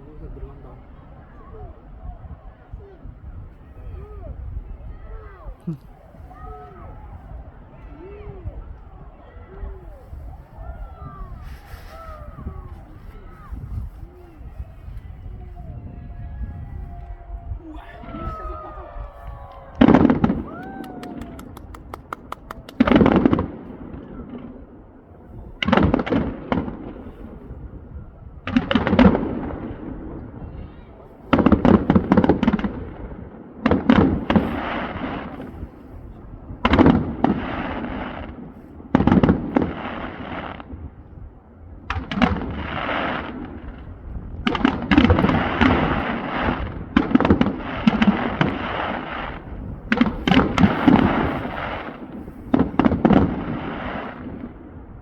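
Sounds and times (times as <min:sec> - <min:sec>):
fireworks crackling: 0:09.6 - 0:15.8, 0:17.8 - 0:24.0, 0:31.1 - 0:40.8, 0:41.9 - 0:55.0
fireworks bursting with bangs: 0:18.0 - 0:24.5, 0:31.1 - 0:41.0, 0:41.9 - 0:55.0.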